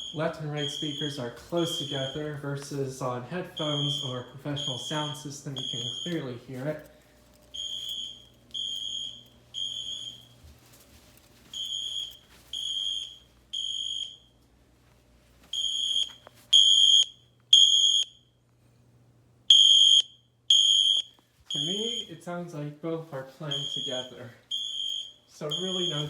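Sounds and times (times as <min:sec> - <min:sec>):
fire alarm horn blasts: 0:00.0 - 0:02.7, 0:03.4 - 0:06.9, 0:07.5 - 0:10.4, 0:11.5 - 0:14.4, 0:15.5 - 0:18.3, 0:19.5 - 0:22.4, 0:23.4 - 0:26.0.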